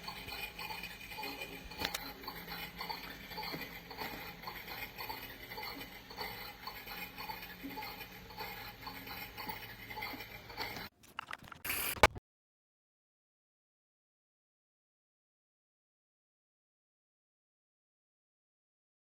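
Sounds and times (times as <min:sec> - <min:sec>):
toy dishes and cutlery clinking: 0:00.0 - 0:12.0.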